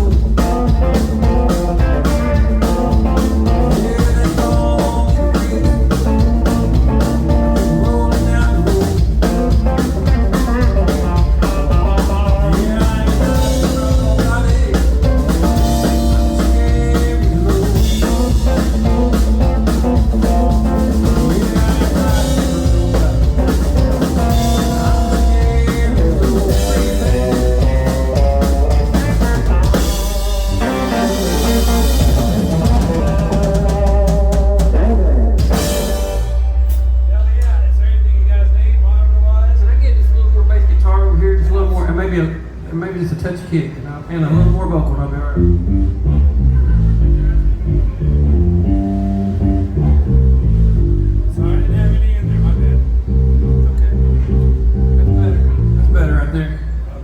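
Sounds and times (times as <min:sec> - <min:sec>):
drum kit beat with rimshots: 0:00.0 - 0:38.6
electric guitar lines: 0:00.0 - 0:43.4, 0:44.0 - 0:57.0.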